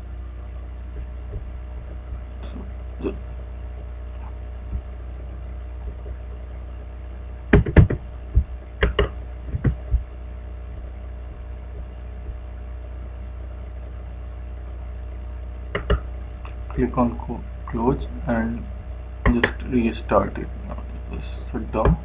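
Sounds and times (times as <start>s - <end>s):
low electrical hum: 0.0s - 22.0s
computer clicks and knocks: 7.5s - 8.0s, 8.8s - 9.9s, 15.7s - 16.1s.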